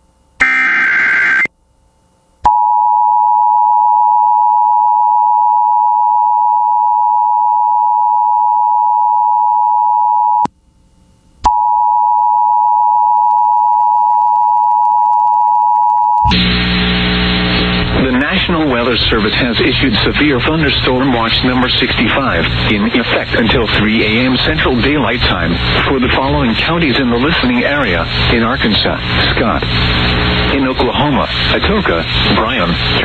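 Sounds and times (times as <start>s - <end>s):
two-note attention signal: 0.4s - 1.5s.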